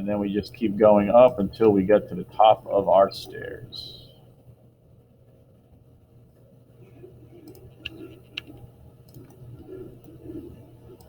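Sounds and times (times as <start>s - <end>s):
low steady hum: 0.0s - 11.0s
computer mouse clicks: 7.4s - 11.0s.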